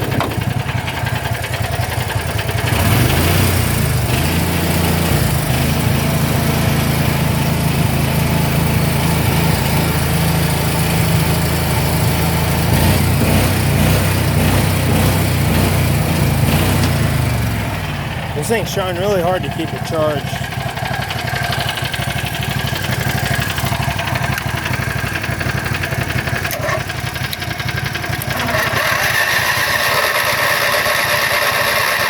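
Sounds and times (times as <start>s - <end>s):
small engine running: 0.0s - 32.0s.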